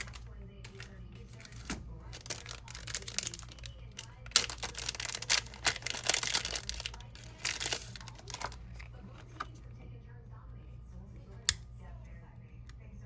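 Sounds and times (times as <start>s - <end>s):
plastic film crinkling and tearing: 0.0s - 9.6s.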